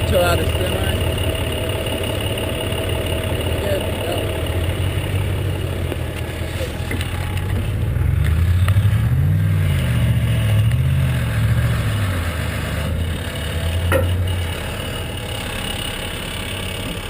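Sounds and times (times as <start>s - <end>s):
truck engine under load: 0.0s - 17.0s.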